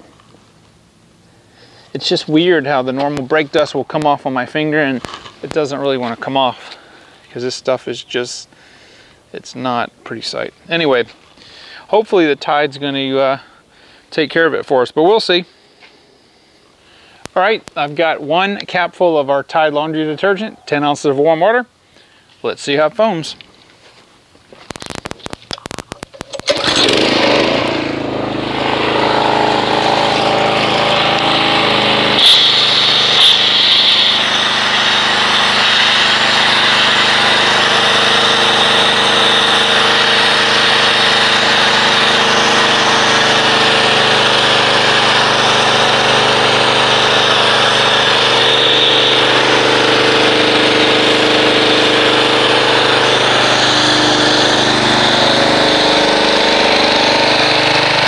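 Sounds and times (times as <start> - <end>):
rapid clicks: 24.7 - 27.7
pressure washer running: 24.7 - 58.0
hissing foam spray: 28.7 - 57.9.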